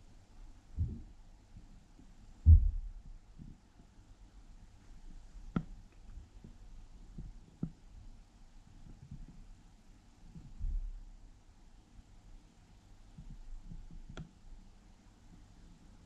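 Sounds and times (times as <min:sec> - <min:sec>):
heavy thud through ceiling: 0:02.4 - 0:03.1.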